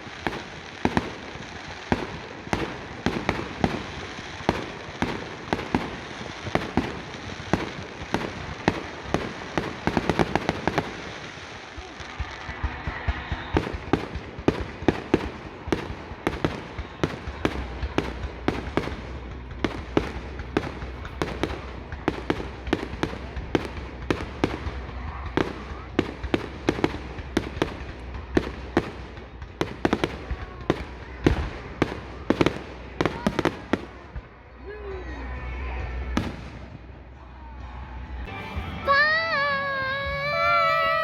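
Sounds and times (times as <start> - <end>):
fireworks bangs and cracks: 0.0 - 34.6, 35.8 - 37.1, 38.3 - 41.0.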